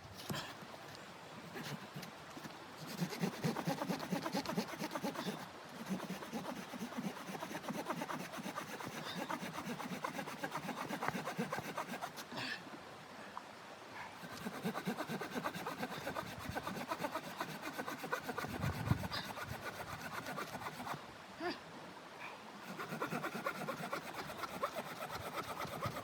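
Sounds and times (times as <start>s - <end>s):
hand saw cutting wood: 1.5s - 2.0s, 2.8s - 12.3s, 14.2s - 21.0s, 22.6s - 26.0s.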